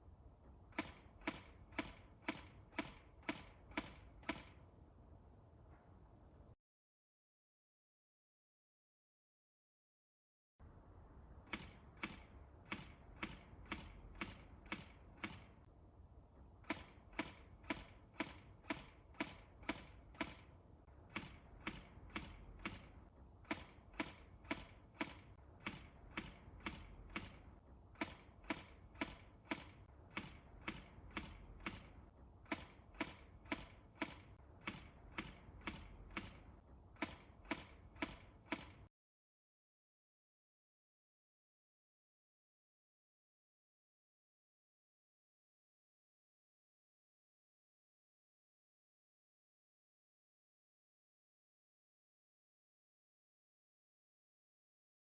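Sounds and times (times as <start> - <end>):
airsoft gun firing shots: 0.8 - 4.6, 11.5 - 15.6, 16.6 - 38.9.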